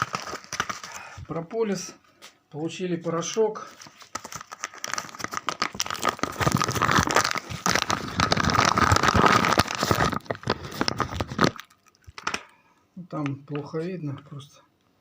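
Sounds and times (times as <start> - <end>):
foil bag crinkling: 0.0 - 1.3, 3.6 - 12.5.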